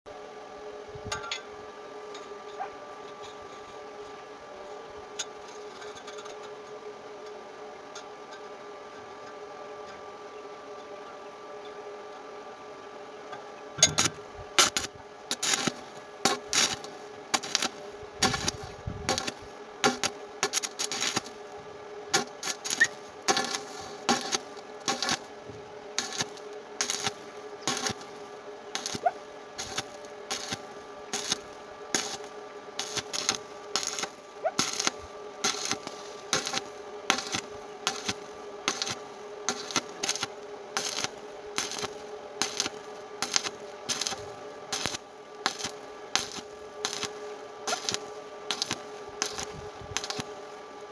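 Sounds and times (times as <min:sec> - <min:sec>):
steady hum: 0:00.1 - 0:50.9
welding arc crackling and popping: 0:13.8 - 0:50.9.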